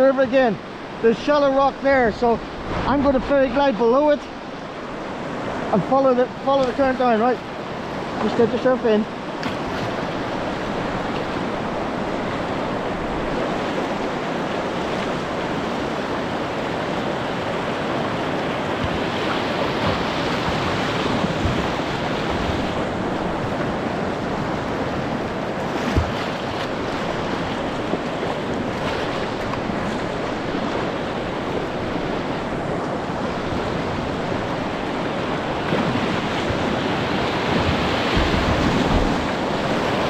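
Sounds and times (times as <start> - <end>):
river water rushing over rocks: 0.0 - 40.0
wind buffeting microphone: 9.2 - 40.0.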